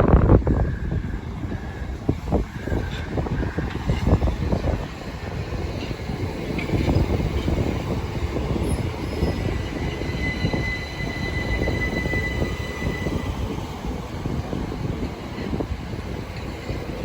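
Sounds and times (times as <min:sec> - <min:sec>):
train rumbling and braking: 0:00.0 - 0:17.0
high brake squeal: 0:08.5 - 0:13.6.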